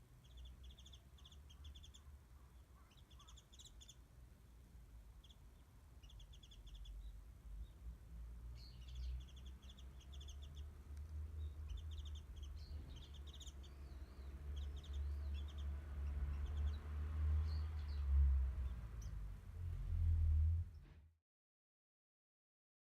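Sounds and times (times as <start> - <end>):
birds chirping: 0.0 - 19.8
bird twittering: 0.2 - 4.0, 5.2 - 7.2, 8.6 - 10.8, 11.4 - 16.8
low rumble: 11.2 - 21.1.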